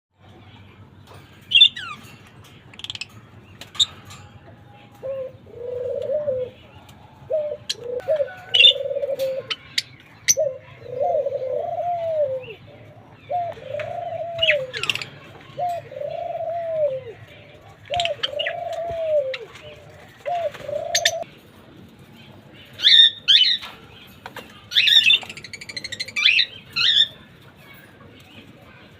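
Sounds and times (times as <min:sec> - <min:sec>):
cage birds chirping: 0:00.2 - 0:28.9
dove cooing: 0:04.9 - 0:21.3.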